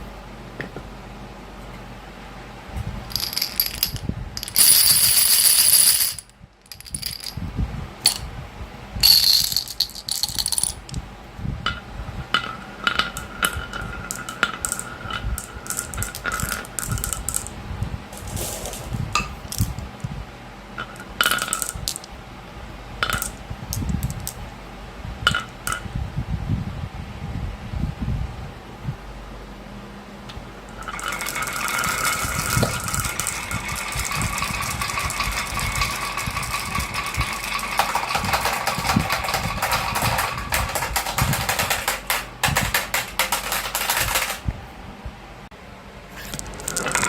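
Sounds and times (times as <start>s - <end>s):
marbles clattering down a run: 3.1s - 7.4s, 9.0s - 11.0s, 12.9s - 17.5s, 23.0s - 24.4s, 30.8s - 44.4s.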